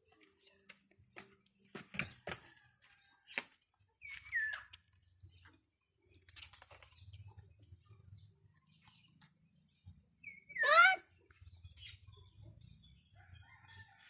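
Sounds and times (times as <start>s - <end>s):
small bird chirp: 4.0s - 14.0s.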